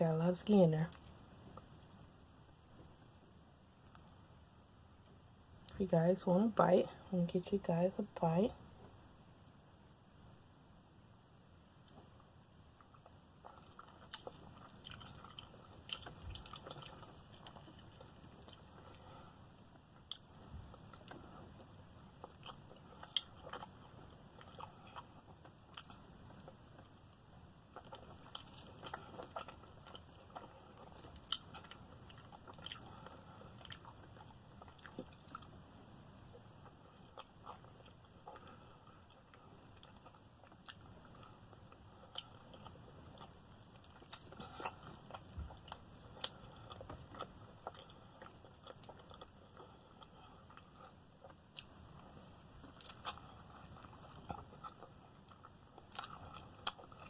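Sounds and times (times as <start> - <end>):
person chewing fried chicken: 11.7 - 57.0.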